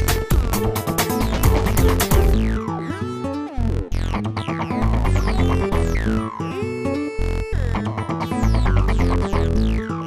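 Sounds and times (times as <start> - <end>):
electronic dance music: 0.0 - 3.2.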